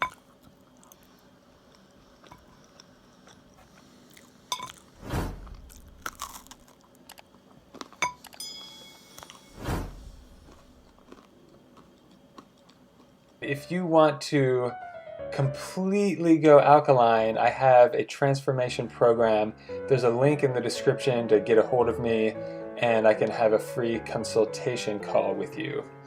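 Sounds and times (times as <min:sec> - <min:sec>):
person chewing crunchy bread: 0:00.0 - 0:08.4, 0:10.1 - 0:13.4
short ringing clink: 0:08.0 - 0:09.6.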